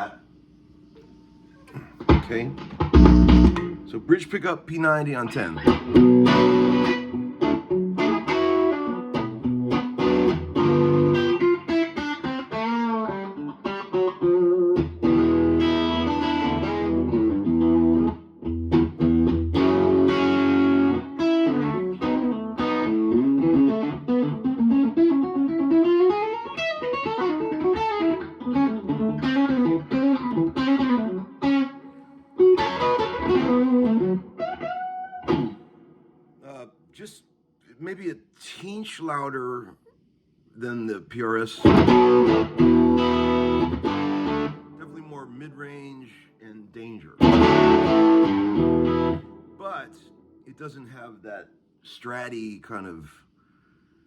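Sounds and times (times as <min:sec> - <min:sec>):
electric guitar through amp: 0:01.7 - 0:04.4, 0:05.0 - 0:36.6, 0:41.6 - 0:44.8, 0:47.2 - 0:49.8.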